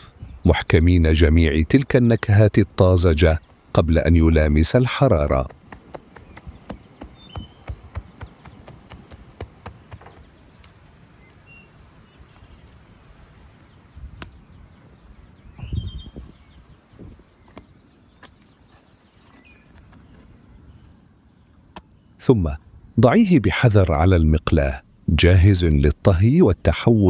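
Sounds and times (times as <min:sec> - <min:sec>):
faint bird chirps: 0:00.0 - 0:27.0
dull thumps: 0:05.2 - 0:10.4
dough clicks and taps: 0:05.4 - 0:10.3.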